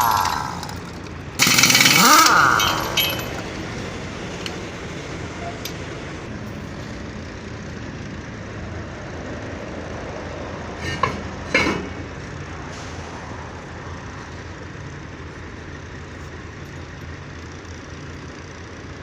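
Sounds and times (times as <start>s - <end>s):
short loud noises: 0.0s - 3.5s
truck engine rumbling: 0.0s - 19.0s.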